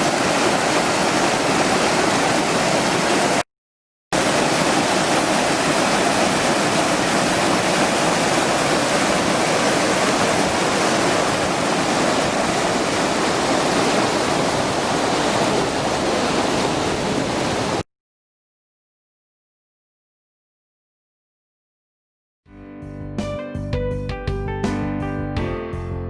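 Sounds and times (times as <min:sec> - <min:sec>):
river rushing: 0:00.0 - 0:03.4, 0:04.2 - 0:17.8.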